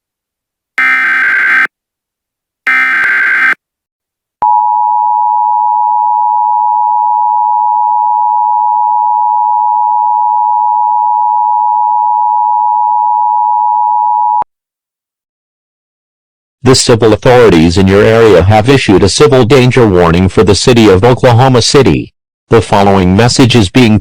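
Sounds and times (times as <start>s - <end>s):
steady alert tone: 0.8s - 1.7s, 2.7s - 3.6s.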